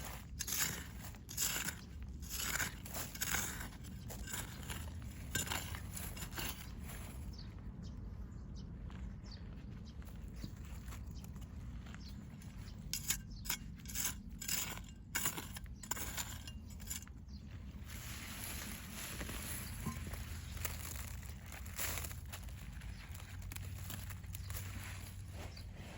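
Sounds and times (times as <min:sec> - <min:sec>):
digging tool scraping soil: 0:00.0 - 0:07.1, 0:12.4 - 0:25.9
steady low rumble: 0:00.1 - 0:25.9.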